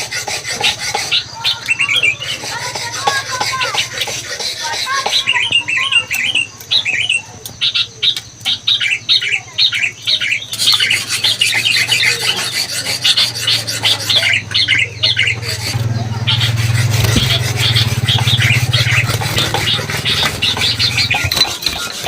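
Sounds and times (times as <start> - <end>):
lorikeet chattering: 0.0 - 22.0
steady low hum: 10.3 - 21.8.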